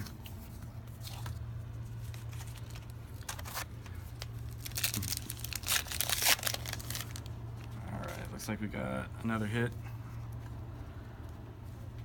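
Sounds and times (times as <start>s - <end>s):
wrapper being torn and crinkled: 2.1s - 7.3s.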